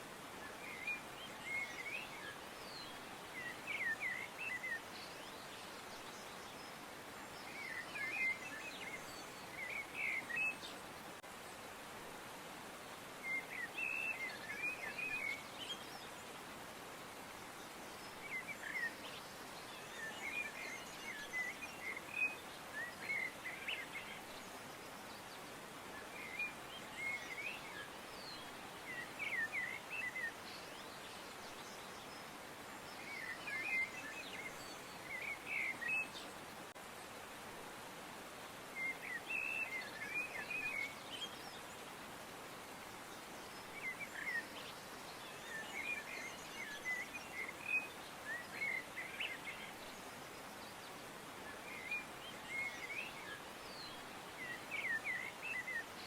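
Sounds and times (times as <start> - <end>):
background hiss: 0.0 - 56.0
songbirds twittering: 0.1 - 56.0.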